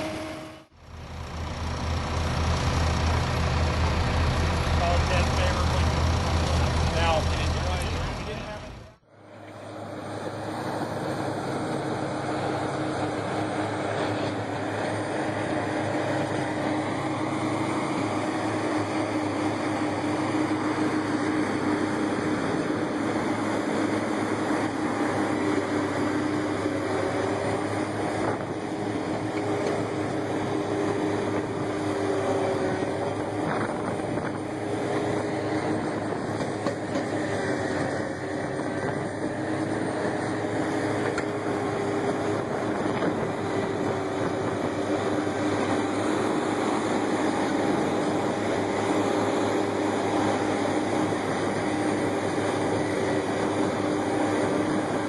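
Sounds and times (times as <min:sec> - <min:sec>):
heavy machinery running under load: 0:00.0 - 0:55.0.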